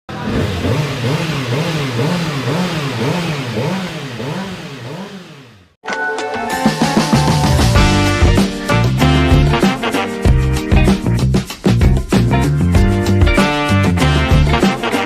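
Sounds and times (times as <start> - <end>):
motorcycle engine revving: 0.1 - 5.8
music: 5.8 - 15.0.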